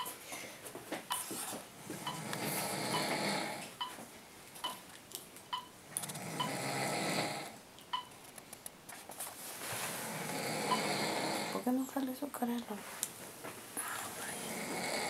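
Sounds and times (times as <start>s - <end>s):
man snoring: 2.1s - 3.6s, 6.0s - 7.6s, 10.0s - 11.7s, 14.2s - 15.0s.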